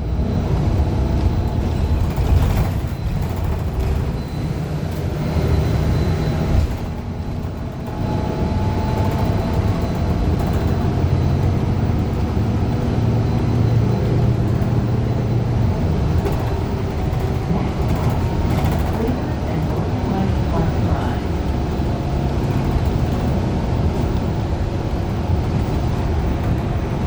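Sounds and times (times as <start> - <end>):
bus engine and road rumble: 0.0 - 27.0.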